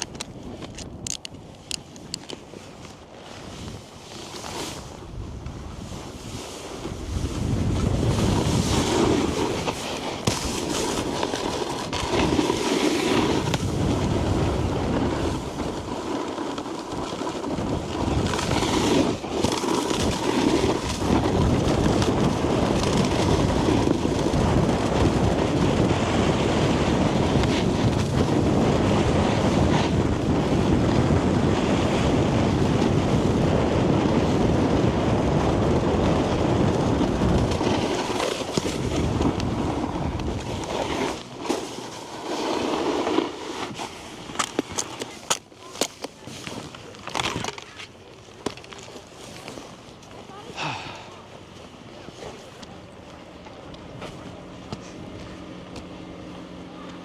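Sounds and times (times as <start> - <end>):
snowboard sliding over snow: 0.0 - 52.7
wind buffeting microphone: 4.8 - 16.0, 16.8 - 42.8.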